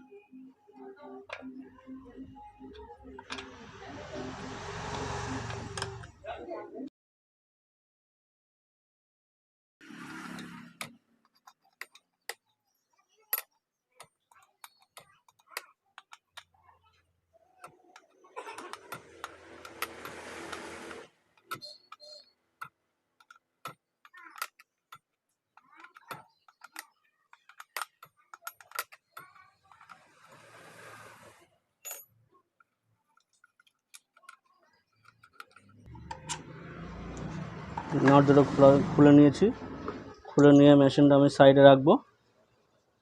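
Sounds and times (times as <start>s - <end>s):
metal scraping: 2.6s - 6.2s, 18.2s - 22.3s
hand tools clicking on metal: 17.6s - 30.0s.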